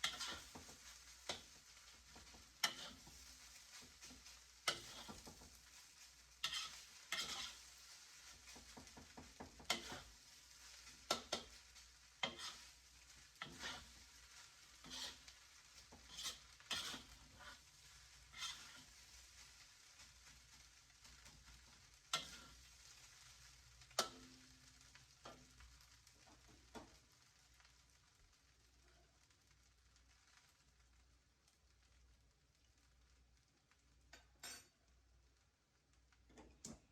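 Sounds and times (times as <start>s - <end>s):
utensil scraping a pan: 0.0s - 25.6s
faint sizzle of frying: 0.0s - 36.9s.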